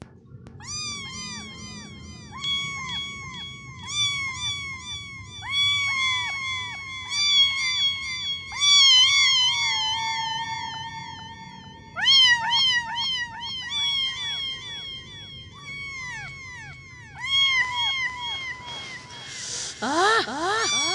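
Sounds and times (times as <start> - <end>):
kitten mewing: 19.5 - 20.9.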